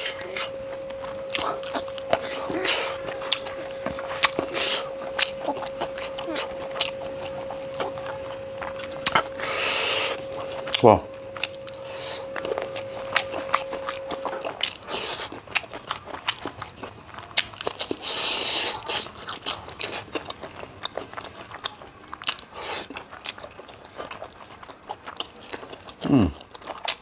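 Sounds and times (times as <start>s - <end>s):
faint steady tone: 0.0s - 17.3s
person chewing: 0.0s - 27.0s.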